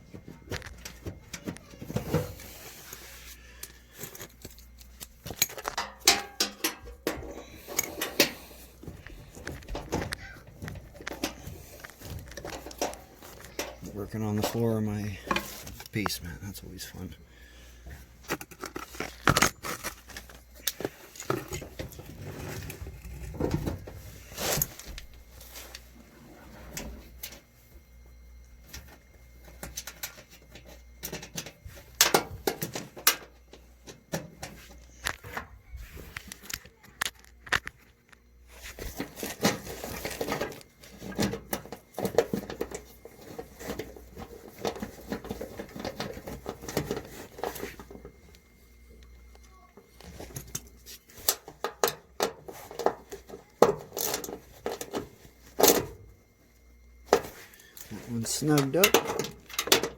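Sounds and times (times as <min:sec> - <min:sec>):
steady low hum: 0:00.0 - 0:59.9
tools clicking tapping and scraping: 0:00.5 - 0:16.2, 0:18.2 - 0:22.0, 0:28.7 - 0:35.4, 0:39.0 - 0:55.0, 0:57.1 - 0:59.9.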